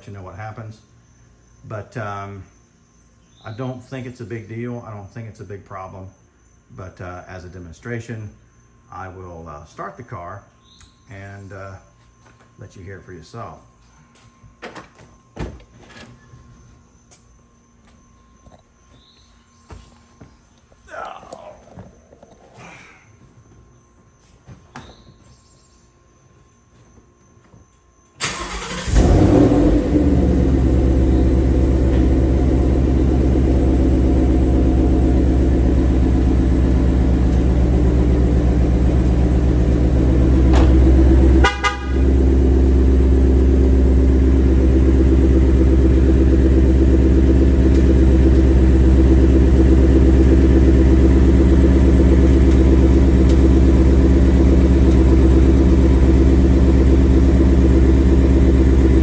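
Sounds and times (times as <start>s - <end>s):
car engine starting and idling: 28.2s - 59.0s
engine ticking: 28.2s - 59.0s.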